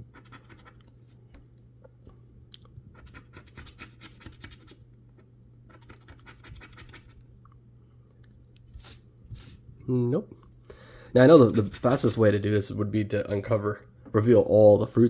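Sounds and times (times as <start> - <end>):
scratching a scratch ticket: 0.0 - 0.9, 2.9 - 7.2, 11.2 - 12.3.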